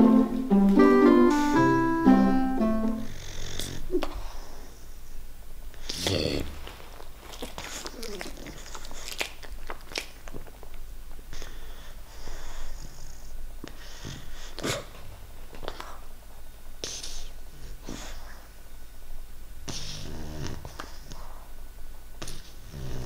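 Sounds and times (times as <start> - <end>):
puppy snorts and snuffles: 5.8 - 10.4, 11.3 - 15.0, 16.8 - 18.5, 19.7 - 21.5, 22.2 - 23.0.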